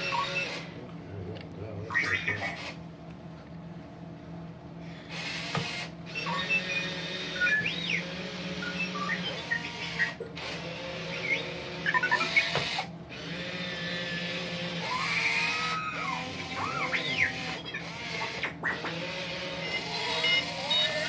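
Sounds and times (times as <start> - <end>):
toy robot electronic beeps and whistles: 0.0 - 0.6, 2.0 - 2.8, 5.2 - 10.2, 11.0 - 12.8, 14.8 - 21.0
motor whir: 0.0 - 0.8, 5.0 - 21.0.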